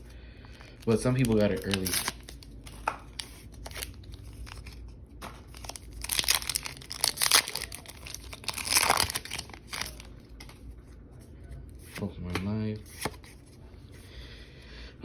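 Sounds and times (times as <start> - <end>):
foil wrapper crinkling and tearing: 0.6 - 10.1.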